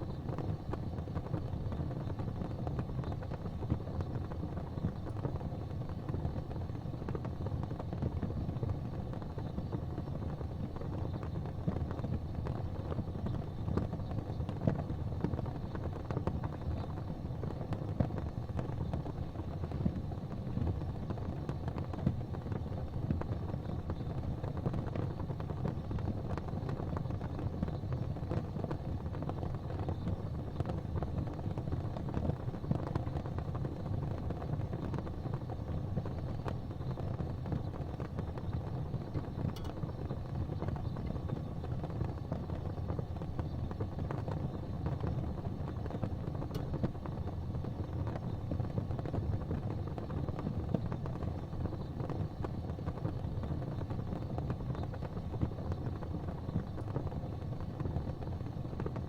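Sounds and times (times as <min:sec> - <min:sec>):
gas fireplace flames rumbling: 0:00.0 - 0:59.0
faint ticks: 0:36.4 - 0:42.2.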